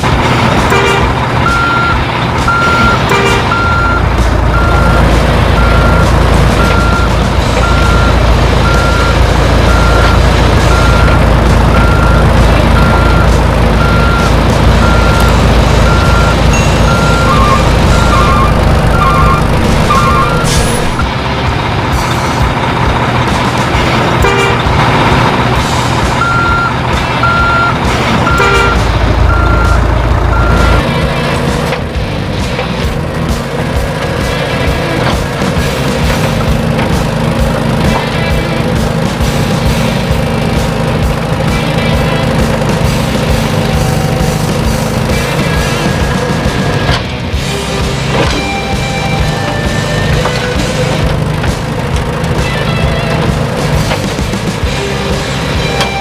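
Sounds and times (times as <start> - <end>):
low engine rumble: 0.0 - 56.0
truck reversing beeper: 0.7 - 21.2, 26.0 - 31.1, 47.4 - 51.4, 54.6 - 56.0.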